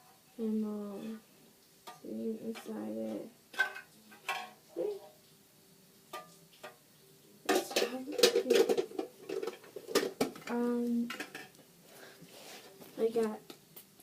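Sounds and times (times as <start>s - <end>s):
small hard objects clattering: 7.5s - 11.6s.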